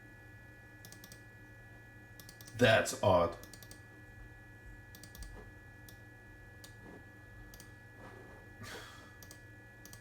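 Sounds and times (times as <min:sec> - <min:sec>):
steady hum: 0:00.0 - 0:10.0
mouse buttons clicking: 0:00.8 - 0:01.2, 0:07.5 - 0:07.7.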